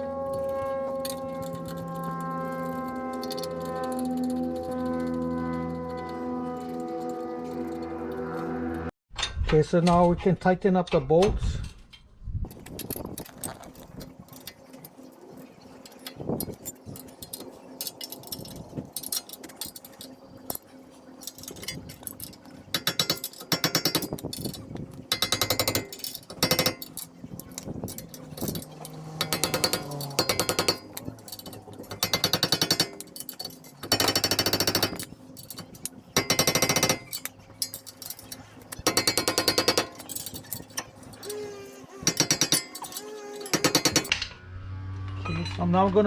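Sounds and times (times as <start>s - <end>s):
impact wrench hammering: 21.2s - 44.2s.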